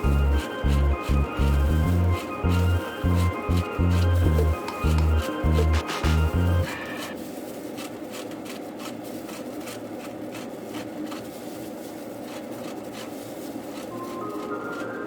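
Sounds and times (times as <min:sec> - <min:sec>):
soft musical notes: 0:00.0 - 0:06.7, 0:13.9 - 0:15.0
low background hum: 0:00.0 - 0:07.6
light taps and clicks: 0:04.3 - 0:06.3.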